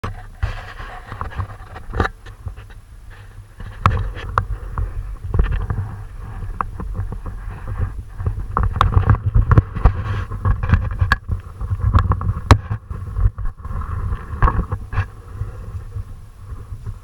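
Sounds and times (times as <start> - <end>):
wind buffeting microphone: 0.0 - 17.0
scattered knocks and clicks: 3.6 - 15.1.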